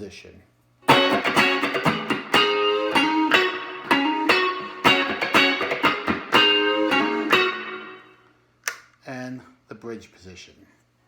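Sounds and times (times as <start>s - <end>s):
electric guitar chords and notes: 0.8s - 8.3s.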